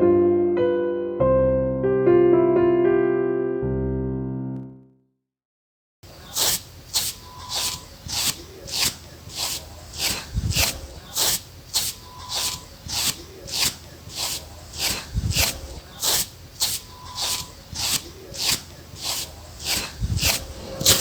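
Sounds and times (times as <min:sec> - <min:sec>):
comb swishing through hair: 0:06.1 - 0:21.0.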